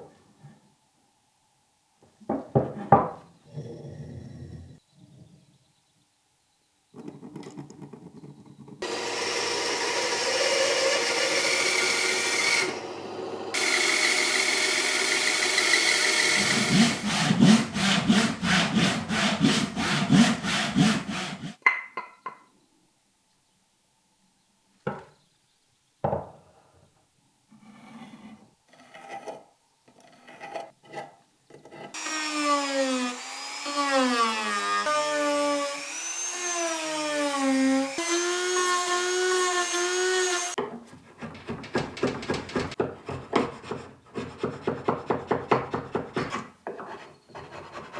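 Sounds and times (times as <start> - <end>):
power tool running: 8.8 - 17.4, 32.0 - 40.6
hand tool working wood: 13.6 - 21.6, 27.6 - 47.9
knocks: 40.6 - 43.5.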